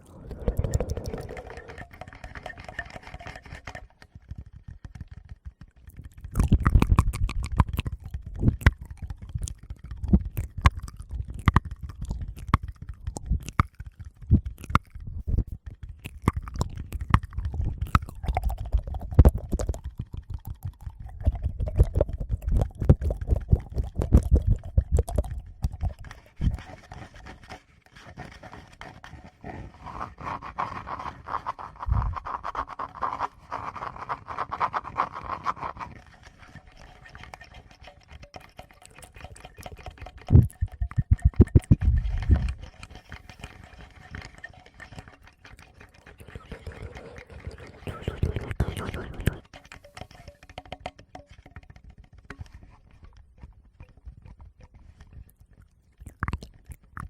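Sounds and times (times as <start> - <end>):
fingers tapping microphones: 4.2 - 26.6
mouth sounds: 46.2 - 49.5.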